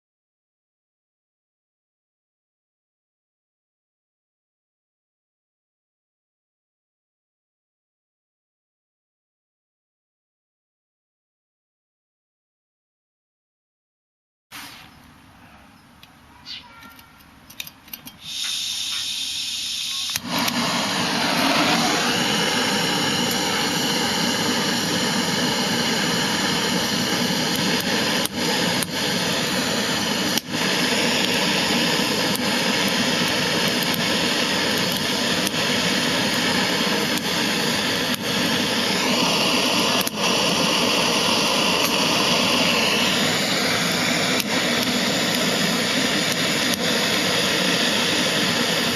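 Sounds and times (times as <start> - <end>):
burner flame hissing: 14.5 - 15.0, 18.0 - 48.9.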